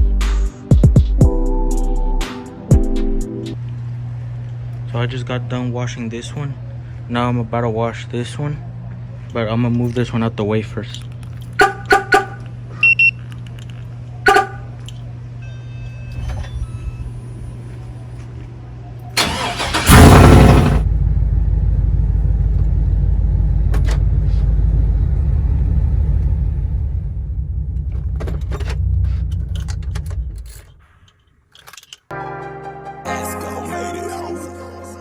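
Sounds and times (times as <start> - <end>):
truck engine cranking and running: 17.6 - 32.0
low hum: 19.8 - 30.7.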